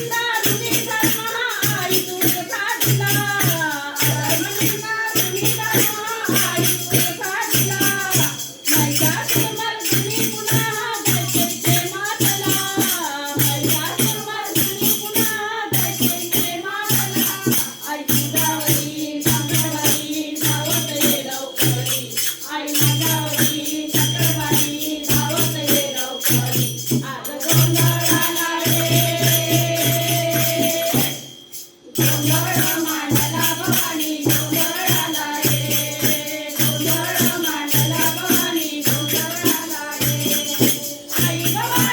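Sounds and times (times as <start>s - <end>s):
jingling percussion: 0.0s - 41.9s
steady drumbeat: 32.0s - 41.9s.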